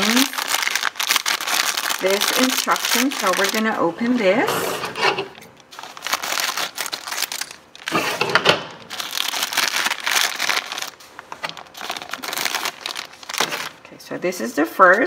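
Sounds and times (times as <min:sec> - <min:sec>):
plastic bag crinkling: 0:00.0 - 0:14.0
paper rustling: 0:04.8 - 0:08.2, 0:08.9 - 0:13.8.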